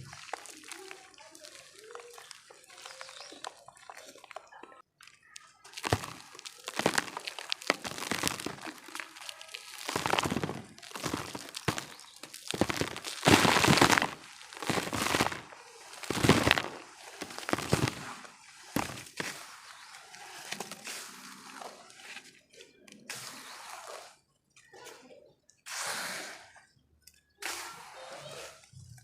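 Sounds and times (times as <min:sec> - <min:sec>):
dirt chunks crunching: 0:00.0 - 0:20.8.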